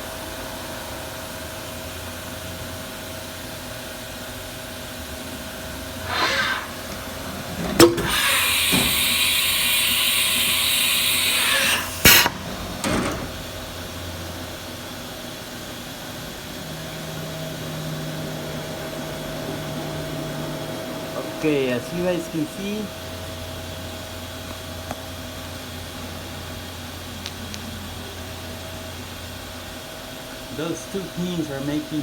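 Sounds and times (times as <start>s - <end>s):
machine humming: 4.8s - 15.1s, 16.6s - 24.8s
air hissing: 5.8s - 13.6s
sharp pneumatic clack: 6.0s - 13.6s.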